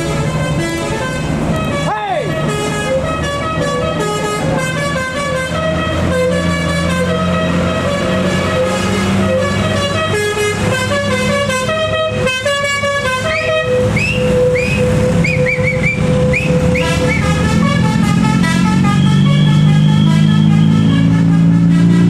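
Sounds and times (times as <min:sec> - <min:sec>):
engine hum: 0:00.0 - 0:22.0
multi-tone bus horn melody: 0:00.0 - 0:22.0.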